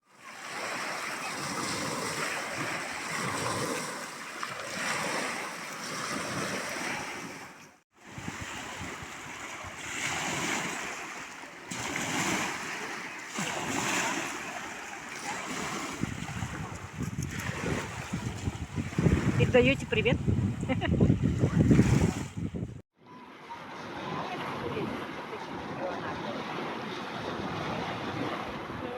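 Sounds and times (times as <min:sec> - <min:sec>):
waves washing onto shore: 0:00.0 - 0:22.4, 0:23.3 - 0:28.9
wind buffeting microphone: 0:15.6 - 0:22.8.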